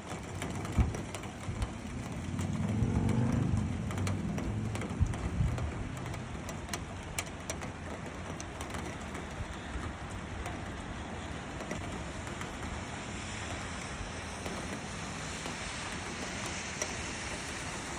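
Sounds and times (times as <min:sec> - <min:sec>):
sharp drip ticks: 0:00.0 - 0:17.9
wind and rain hiss: 0:00.0 - 0:17.9
low rumble: 0:01.7 - 0:06.5.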